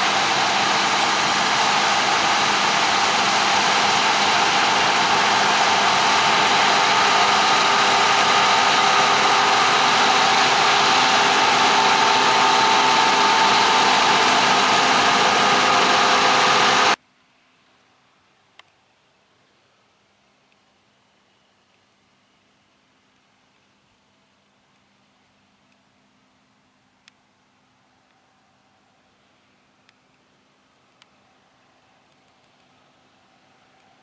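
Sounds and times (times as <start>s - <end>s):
diesel machinery running: 0.0s - 17.0s.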